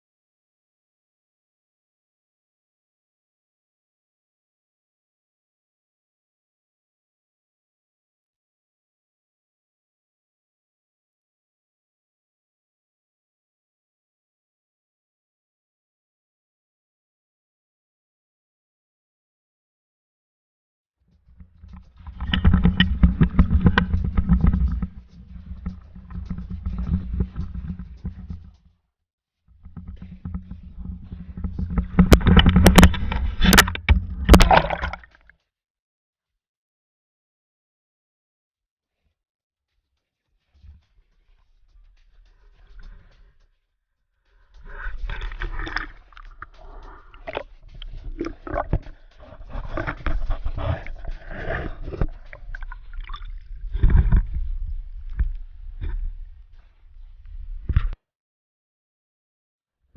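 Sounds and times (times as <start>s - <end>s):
sharp knocks and clicks: 21.3s - 28.6s, 29.6s - 35.0s
water sloshing and splashing: 21.5s - 28.6s, 29.7s - 35.3s, 44.6s - 56.8s.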